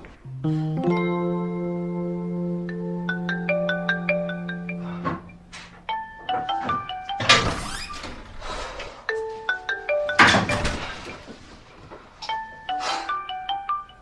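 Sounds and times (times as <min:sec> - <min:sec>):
marimba phone ringtone: 0:00.6 - 0:07.4, 0:09.1 - 0:11.2, 0:12.2 - 0:14.0.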